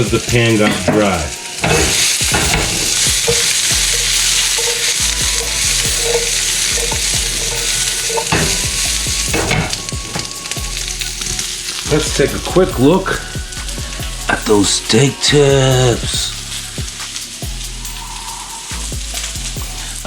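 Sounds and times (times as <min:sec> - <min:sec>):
utensil scraping and knocking on pan: 0:00.0 - 0:12.3
vegetables sizzling in a frying pan: 0:00.0 - 0:20.0.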